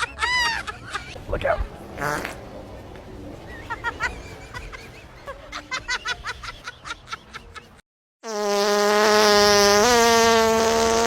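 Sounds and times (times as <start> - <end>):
loud buzzing fart noise: 2.0 - 2.4, 8.2 - 11.0
quick squeaky fart noises: 2.0 - 2.4, 8.2 - 11.0.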